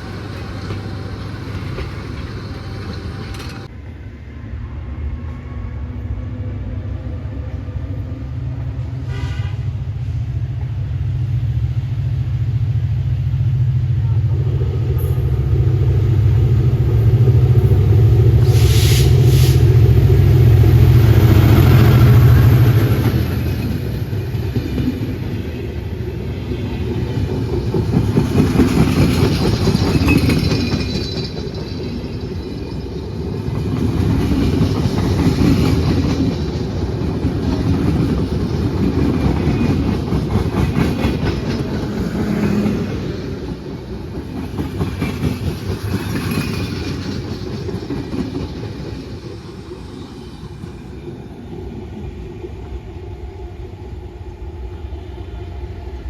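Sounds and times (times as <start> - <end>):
train wheels clacking over rail joints: 0.0 - 3.7, 27.1 - 49.8
heavy low train rumble: 0.0 - 56.0.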